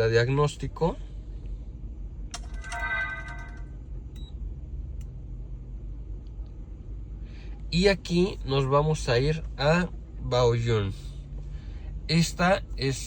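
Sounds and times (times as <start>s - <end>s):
steady low hum: 0.0s - 13.0s
electronic chime: 2.5s - 3.8s.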